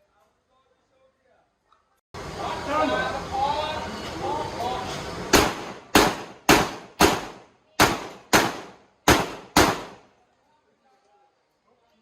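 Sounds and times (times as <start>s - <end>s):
loud shotgun shots: 5.3s - 10.1s.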